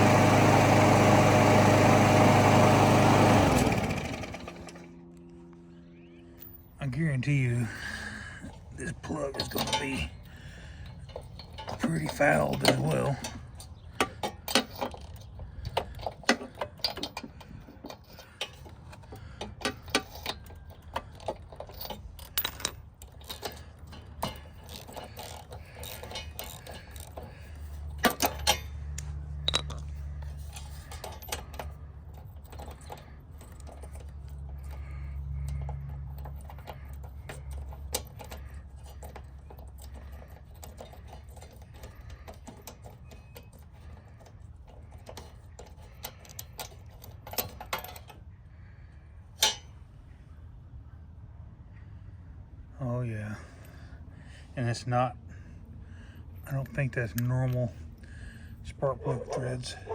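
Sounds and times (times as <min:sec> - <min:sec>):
low hum: 0:04.2 - 0:14.1
hand tools clinking against metal: 0:07.3 - 0:48.2, 0:49.4 - 0:49.8, 0:58.7 - 0:59.9.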